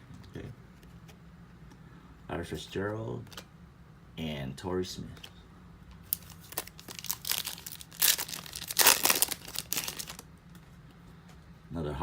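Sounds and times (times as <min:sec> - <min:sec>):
wrapper tearing and crinkling: 0:06.1 - 0:10.2.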